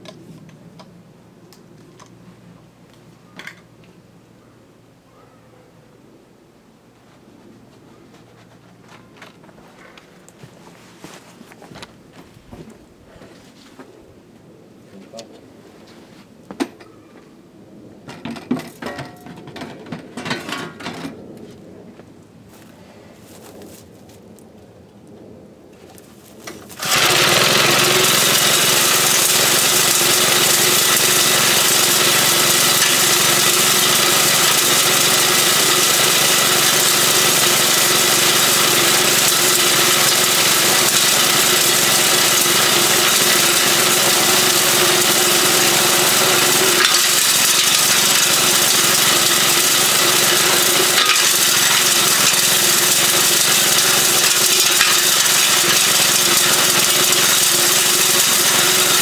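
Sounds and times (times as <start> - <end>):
small engine running loudly: 26.7 - 59.0.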